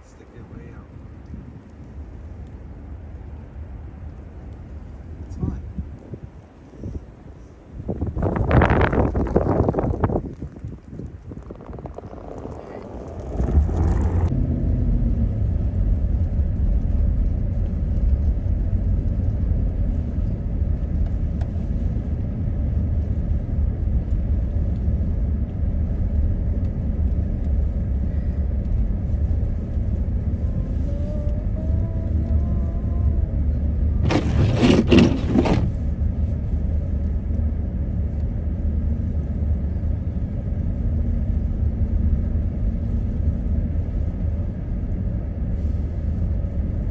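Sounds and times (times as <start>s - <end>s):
road and wind noise: 0.0s - 46.9s
rush of noise: 9.3s - 14.3s.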